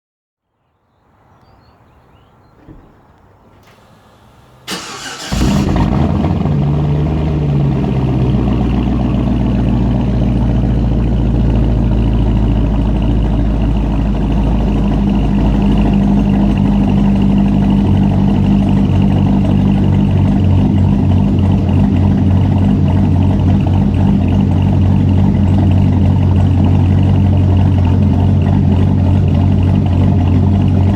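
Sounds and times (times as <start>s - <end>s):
loud pulsing car engine idle: 4.2s - 30.9s
starter motor cranking: 4.7s - 6.2s.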